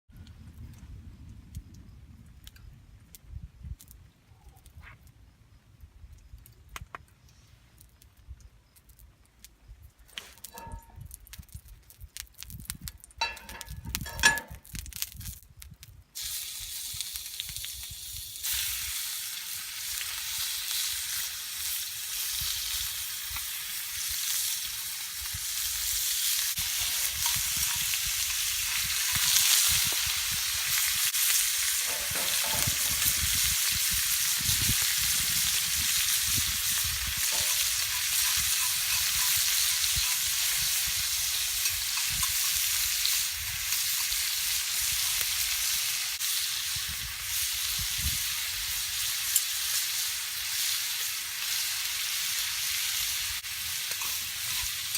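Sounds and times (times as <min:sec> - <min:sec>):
clinks and knocks: 0:10.4 - 0:11.0, 0:13.2 - 0:14.6, 0:31.8 - 0:33.2, 0:37.3 - 0:40.2
food sizzling in a hot pan: 0:16.2 - 0:54.9.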